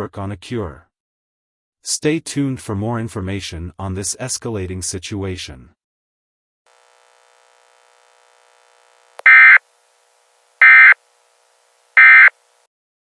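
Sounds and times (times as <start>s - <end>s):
screechy digital data tones: 9.2s - 9.6s, 10.6s - 11.0s, 12.0s - 12.3s.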